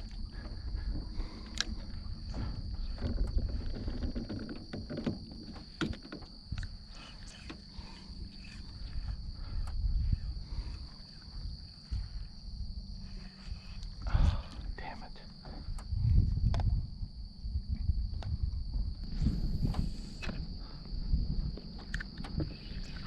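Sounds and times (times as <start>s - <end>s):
insects droning: 0.0s - 23.0s
low rumble: 7.7s - 23.0s.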